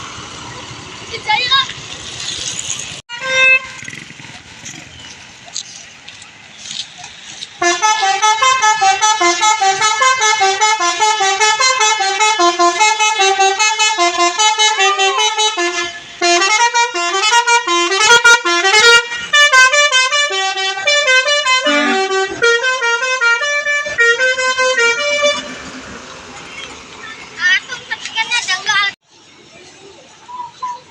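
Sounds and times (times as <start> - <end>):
multi-tone bus horn melody: 3.1 - 4.0, 7.6 - 25.9.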